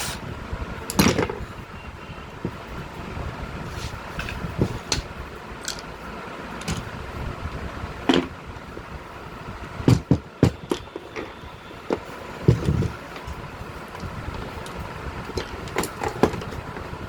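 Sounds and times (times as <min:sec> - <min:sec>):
tools and parts clicking and knocking: 0:00.8 - 0:01.4, 0:04.2 - 0:07.0, 0:08.0 - 0:08.4, 0:09.8 - 0:16.9.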